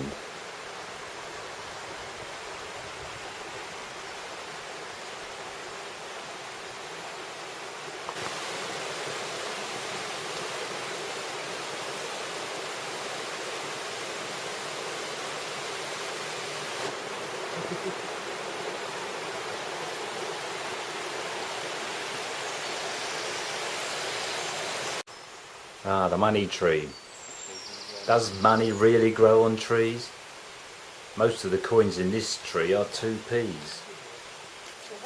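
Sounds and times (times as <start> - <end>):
river water rushing: 0.0 - 25.9.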